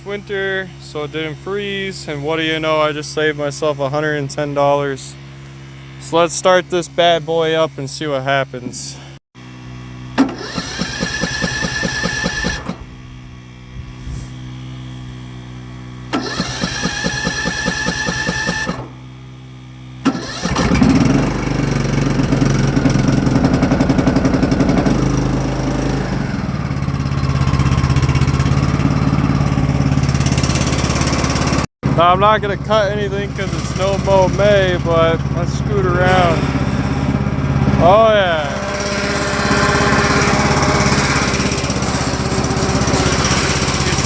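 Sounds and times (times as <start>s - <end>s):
lawn mower engine running: 0.0s - 44.0s
starter motor whining: 10.1s - 13.0s, 14.4s - 19.1s, 19.9s - 44.0s.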